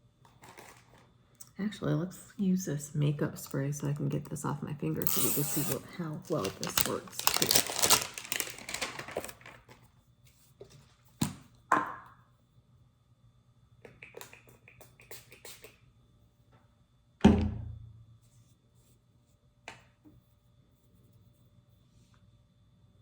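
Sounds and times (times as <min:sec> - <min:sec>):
heavy thunk: 0:17.2 - 0:17.8.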